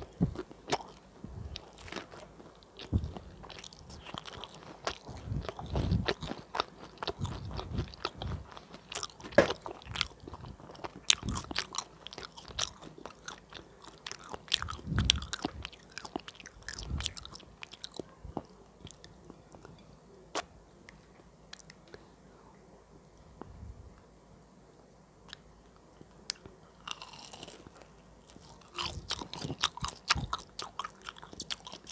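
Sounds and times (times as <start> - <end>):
crunchy biting and chewing: 0.0 - 19.0, 26.3 - 31.9.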